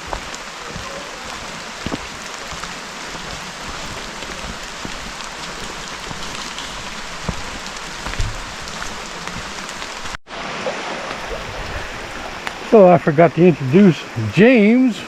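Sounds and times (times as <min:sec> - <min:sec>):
low thumps: 0:00.0 - 0:10.2
steady rain falling: 0:00.0 - 0:15.0.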